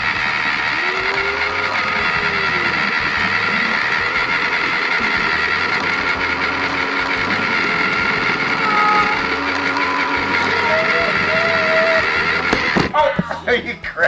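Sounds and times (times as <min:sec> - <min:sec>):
toy vehicle motors whirring: 0:00.0 - 0:13.5
high-pitched squeak: 0:07.5 - 0:12.8.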